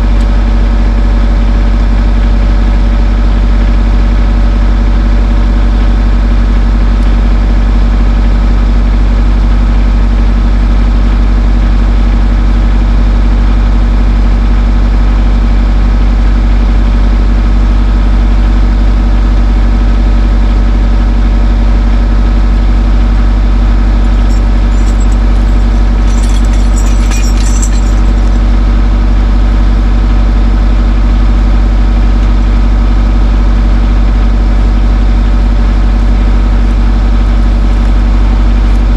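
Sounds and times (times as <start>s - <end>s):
skid steer engine running: 0.0s - 38.9s.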